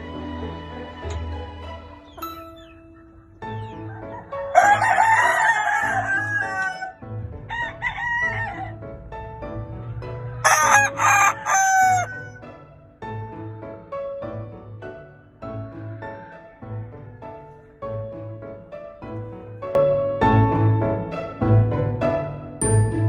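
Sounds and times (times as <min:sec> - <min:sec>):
background music: 0:00.0 - 0:23.0
roosters crowing: 0:03.6 - 0:08.9, 0:09.7 - 0:12.4.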